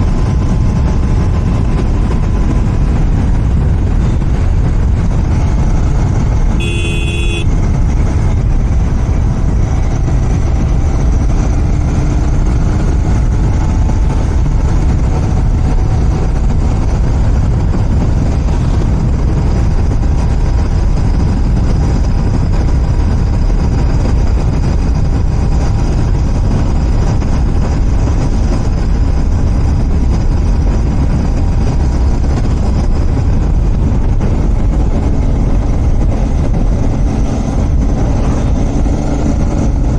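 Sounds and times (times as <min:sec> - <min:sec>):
motorcycle engine cruising: 0:00.0 - 0:39.9
wind rumble on microphone: 0:00.0 - 0:39.9
brief high tone: 0:06.6 - 0:07.5.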